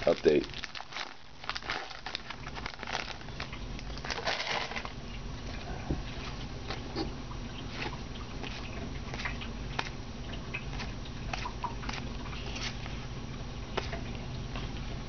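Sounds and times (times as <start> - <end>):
washing machine hum: 0.0 - 15.0.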